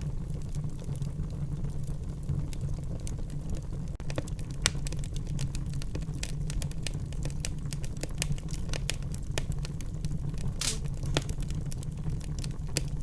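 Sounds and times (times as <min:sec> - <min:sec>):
low rumble of flames: 0:00.0 - 0:13.0
wood fire crackling and popping: 0:00.0 - 0:13.0.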